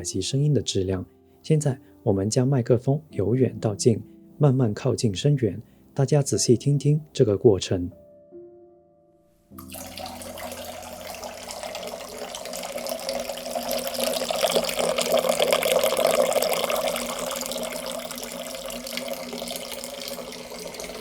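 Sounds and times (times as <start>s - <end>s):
tap water running into sink: 9.6s - 21.0s.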